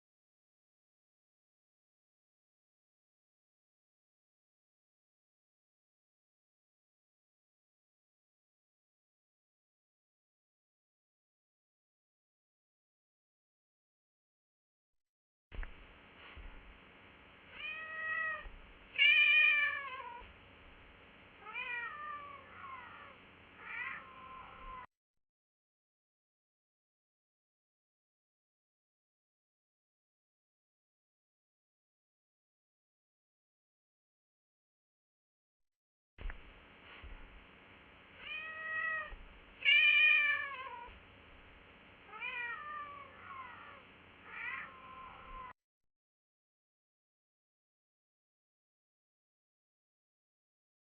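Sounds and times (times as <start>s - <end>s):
cat meowing: 17.6s - 20.3s, 21.4s - 24.9s, 38.2s - 40.9s, 42.1s - 45.6s.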